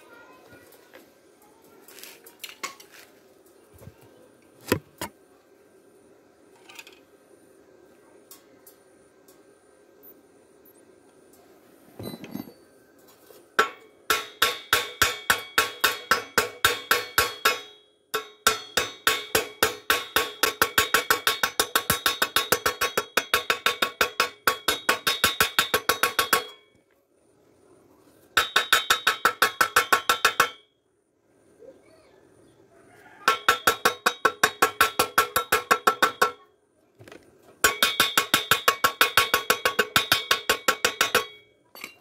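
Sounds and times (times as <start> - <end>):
rapid hammer strikes on steel pipe: 13.6 - 26.7, 28.4 - 30.7, 33.2 - 36.5, 37.6 - 41.5.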